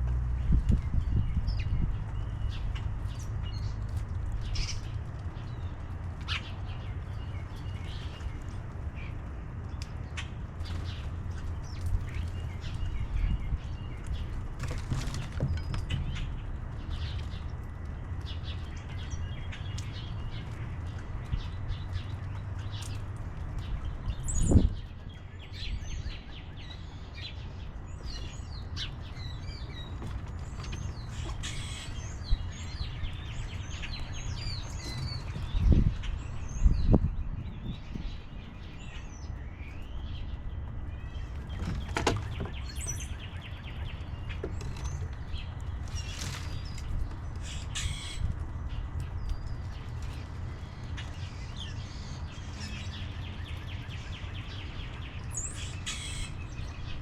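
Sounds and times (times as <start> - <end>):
steady low rumble: 0.0 - 14.6
small birds chirping: 0.0 - 57.0.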